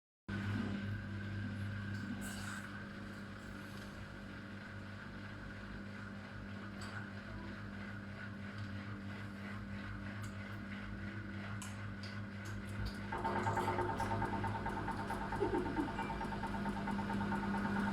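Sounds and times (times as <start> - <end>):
washing machine humming: 0.3 - 17.9.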